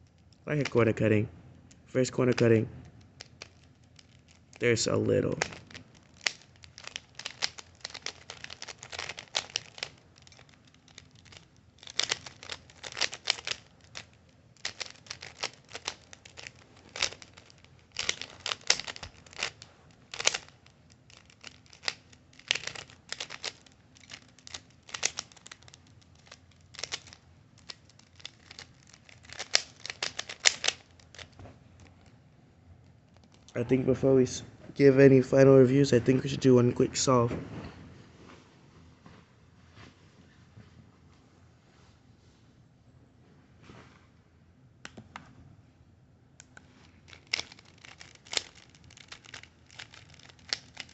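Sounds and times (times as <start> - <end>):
plastic puzzle cube clicking: 2.9 - 31.4, 46.4 - 50.9.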